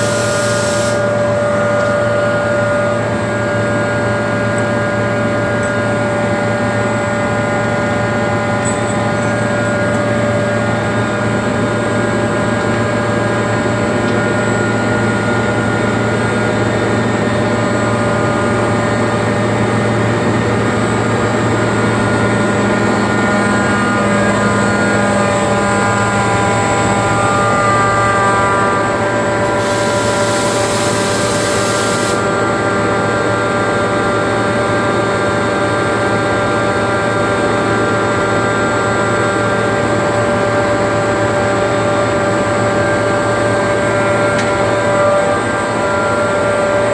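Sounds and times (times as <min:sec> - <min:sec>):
air hiss: 0:00.0 - 0:01.1, 0:29.5 - 0:32.2
air compressor humming and whining: 0:00.0 - 0:46.9.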